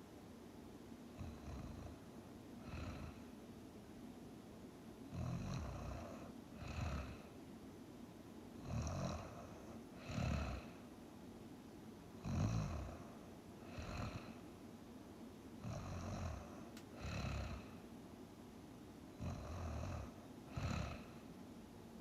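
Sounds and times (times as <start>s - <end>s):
person snoring: 1.2s - 2.0s, 2.6s - 3.2s, 5.2s - 7.3s, 8.6s - 10.8s, 12.2s - 14.4s, 15.6s - 17.8s, 19.2s - 21.2s.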